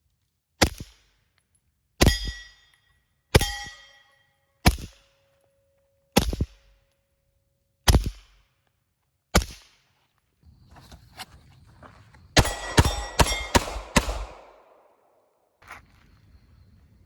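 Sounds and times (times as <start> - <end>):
suppressed pistol shots: 12.4 - 15.1.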